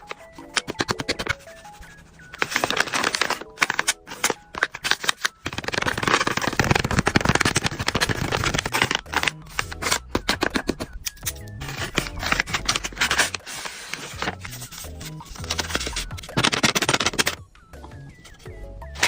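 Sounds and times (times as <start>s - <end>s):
plastic package crinkling: 2.3s - 10.7s, 11.6s - 17.4s.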